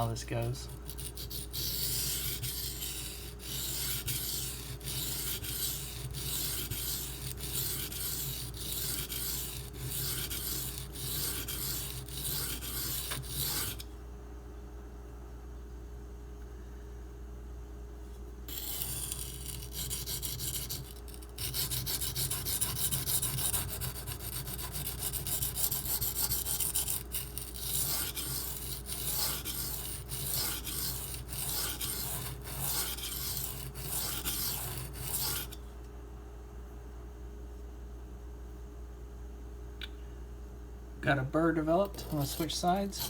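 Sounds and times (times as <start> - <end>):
knife scraping on sharpening stone: 0.7 - 13.8, 18.5 - 35.6, 41.8 - 43.0.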